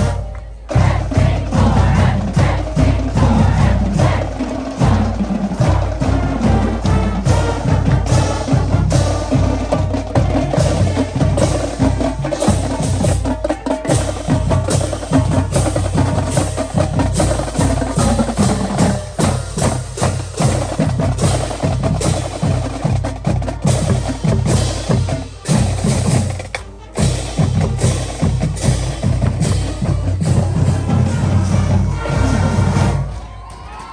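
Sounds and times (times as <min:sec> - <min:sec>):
marching band playing: 0:00.0 - 0:33.9
rapid drum and rim strokes: 0:00.0 - 0:33.9.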